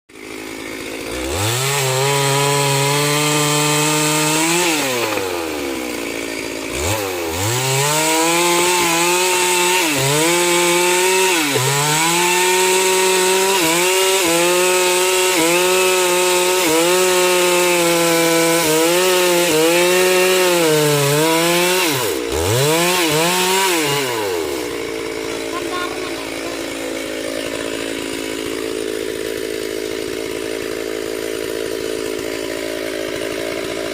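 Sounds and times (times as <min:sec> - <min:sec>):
chainsaw cutting wood: 0:00.1 - 0:33.9.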